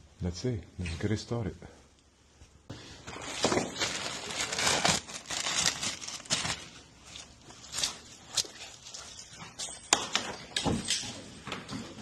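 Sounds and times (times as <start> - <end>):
rustling and scraping handling noise: 2.4 - 9.9.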